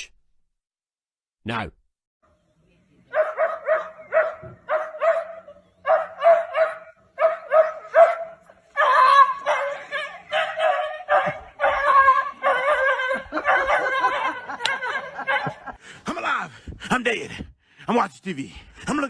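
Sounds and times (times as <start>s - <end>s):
dog yipping and barking: 3.2s - 14.4s.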